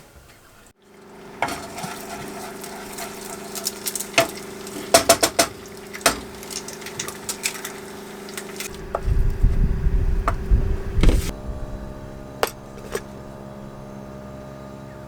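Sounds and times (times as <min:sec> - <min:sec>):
soft frying sizzle: 0:00.0 - 0:11.4
pan and lid clattering: 0:01.4 - 0:08.7, 0:12.4 - 0:13.1
steady low hum: 0:08.3 - 0:15.0
low rumble: 0:08.7 - 0:14.0.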